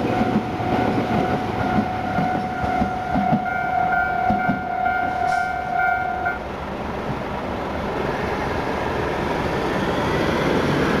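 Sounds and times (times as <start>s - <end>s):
level-crossing warning bell: 0.0s - 6.5s
steady rumbling of traffic: 0.0s - 11.0s.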